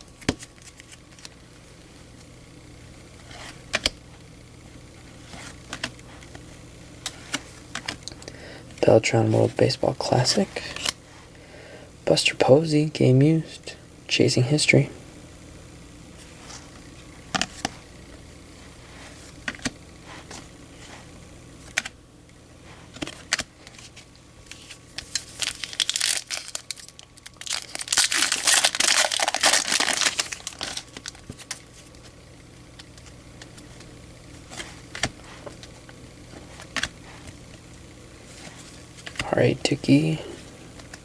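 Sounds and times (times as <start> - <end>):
wrapper crinkling and tearing: 22.9 - 31.9.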